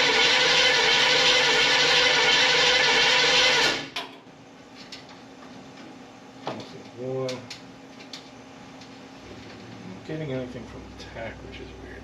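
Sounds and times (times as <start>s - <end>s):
starter motor cranking engine: 0.0s - 3.9s.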